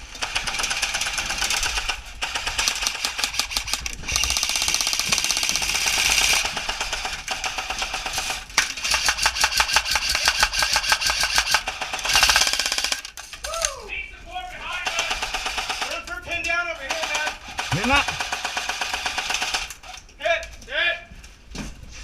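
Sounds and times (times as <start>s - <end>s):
airsoft gun firing full-auto: 0.2s - 13.1s, 14.9s - 16.0s, 16.9s - 19.9s.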